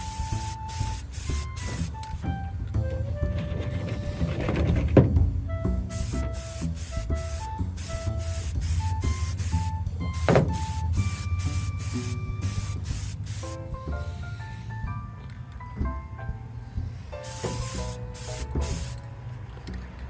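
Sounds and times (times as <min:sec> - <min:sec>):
spray can hissing: 0:00.0 - 0:02.2, 0:05.9 - 0:14.8, 0:17.2 - 0:19.0
background music: 0:00.0 - 0:20.0.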